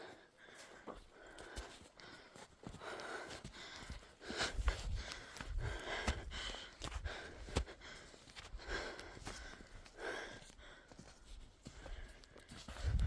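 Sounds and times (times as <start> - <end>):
heavy breathing: 0.0 - 13.0
wind buffeting microphone: 4.6 - 7.2, 12.8 - 13.0.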